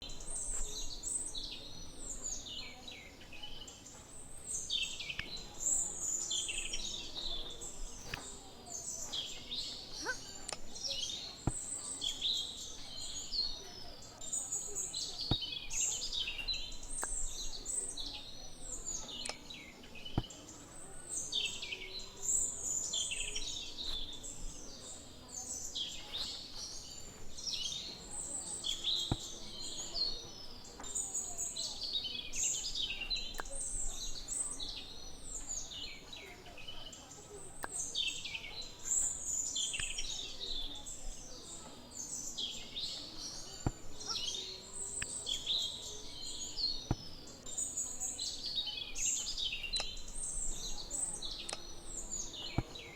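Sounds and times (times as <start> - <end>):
small birds chirping: 0.0 - 52.9
faint clicks: 49.2 - 52.9.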